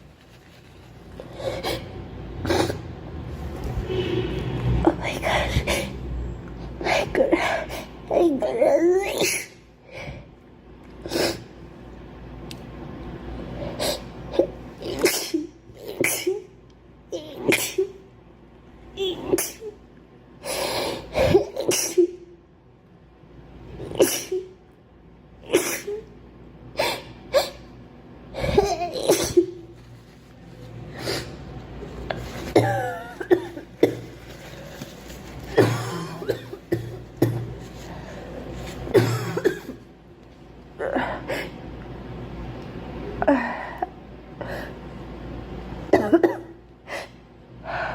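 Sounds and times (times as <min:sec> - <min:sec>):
girl coughing: 0:28.4 - 0:29.6, 0:32.5 - 0:34.1, 0:35.5 - 0:37.6, 0:38.9 - 0:39.8, 0:45.9 - 0:46.6
girl clearing her throat: 0:35.5 - 0:37.6, 0:38.9 - 0:39.8.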